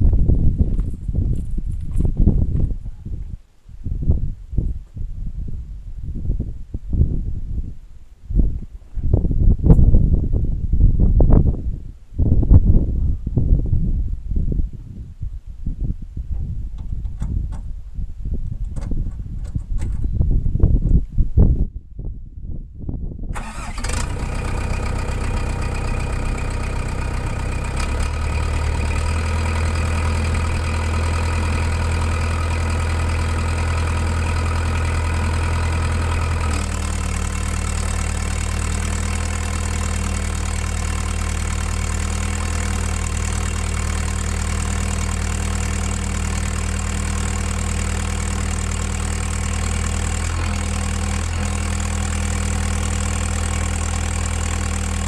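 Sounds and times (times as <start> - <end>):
diesel engine starting and idling: 23.3 - 55.0.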